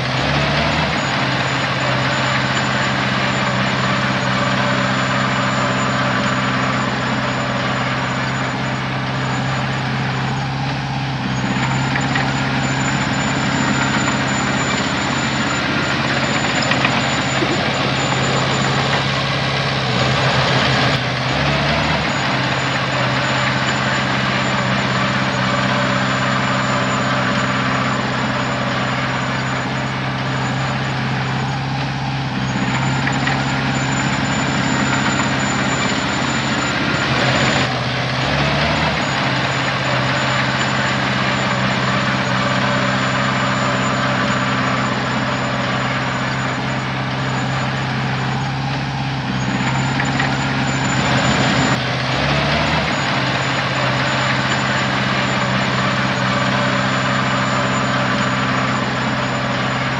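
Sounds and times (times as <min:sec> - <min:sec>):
heavy diesel engine running: 0:00.0 - 0:59.9.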